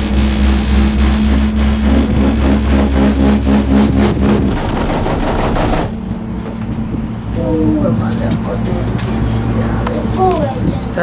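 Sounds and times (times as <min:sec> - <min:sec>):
rattling clatter: 0:00.0 - 0:07.3
low machine hum: 0:00.0 - 0:11.0.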